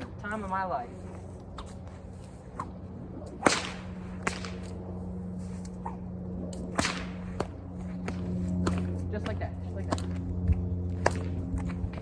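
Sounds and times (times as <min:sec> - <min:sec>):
whip cracking: 0:02.6 - 0:04.8, 0:05.6 - 0:08.9, 0:11.0 - 0:11.7.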